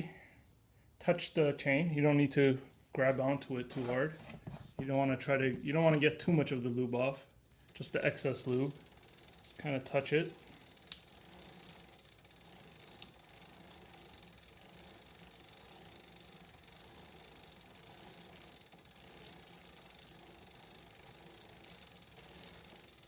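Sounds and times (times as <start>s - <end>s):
bicycle chain ticking: 5.3s - 23.0s.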